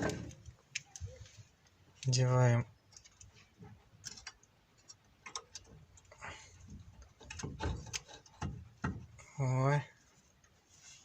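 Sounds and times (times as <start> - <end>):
metallic clicks and knocks: 2.8 - 9.2.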